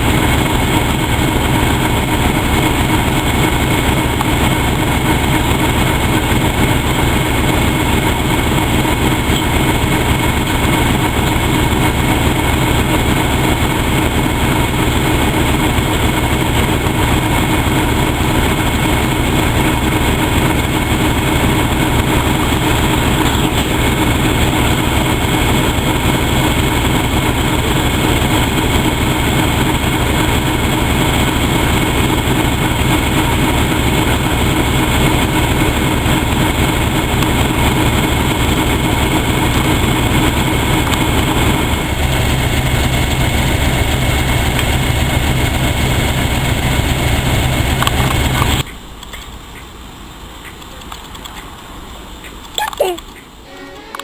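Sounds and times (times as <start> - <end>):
vehicle running with low throb: 0.0 - 48.7
faint high whine: 53.4 - 54.0.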